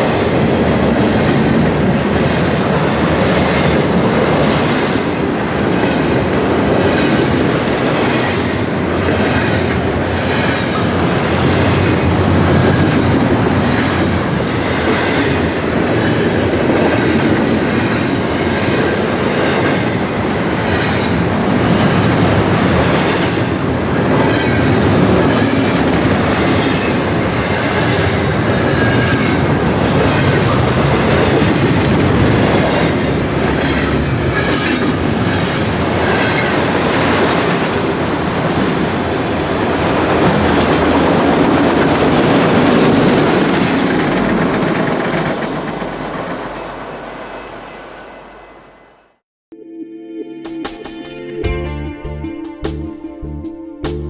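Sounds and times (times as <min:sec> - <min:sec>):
high wheel squeals: 0:00.0 - 0:07.6, 0:08.2 - 0:40.7
train wheels clicking over rail joints: 0:00.0 - 0:46.8.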